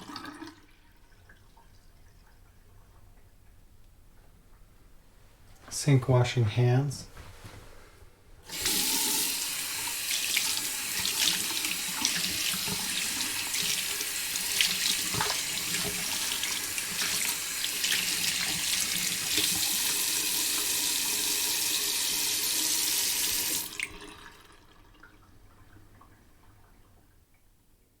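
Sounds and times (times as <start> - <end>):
tap running: 8.5 - 21.2
hands splashing water: 10.1 - 19.6.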